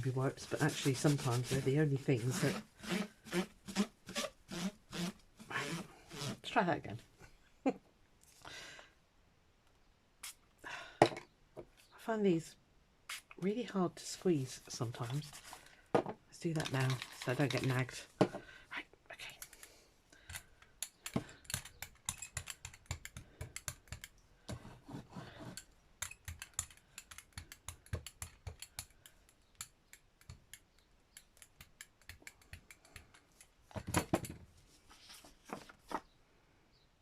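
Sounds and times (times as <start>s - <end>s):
rubbing or scraping: 0.0s - 6.4s.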